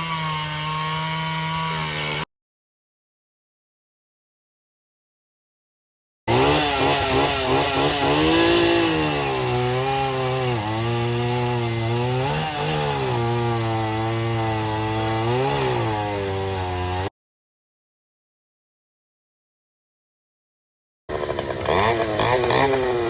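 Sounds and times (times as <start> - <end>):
chainsaw engine running: 6.3 - 17.1, 21.1 - 23.0.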